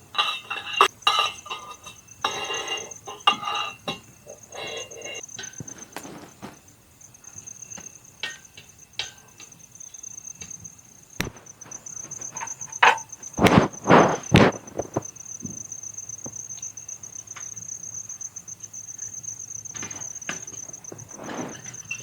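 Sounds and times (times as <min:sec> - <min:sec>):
crickets trilling: 0:00.0 - 0:22.0
rustling scrapes: 0:02.5 - 0:06.7, 0:11.2 - 0:15.2, 0:19.8 - 0:22.0
sharp clicks and knocks: 0:11.2 - 0:15.6.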